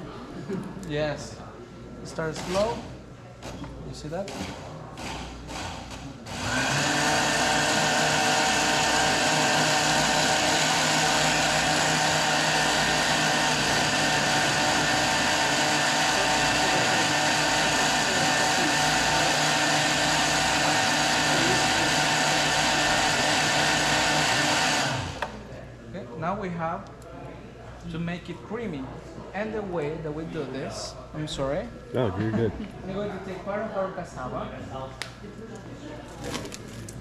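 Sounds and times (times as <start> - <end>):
blender motor running: 4.3 - 25.4.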